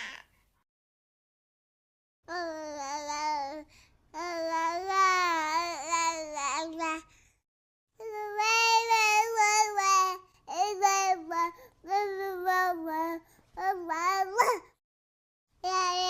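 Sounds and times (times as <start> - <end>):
child squealing: 0.0 - 0.3
young child babbling: 2.3 - 7.1, 8.0 - 14.8, 15.6 - 16.0.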